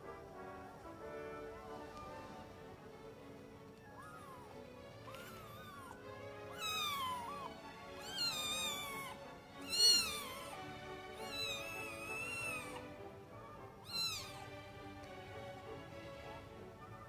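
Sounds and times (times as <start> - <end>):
background music: 0.0 - 17.0
kitten meowing: 3.7 - 14.6.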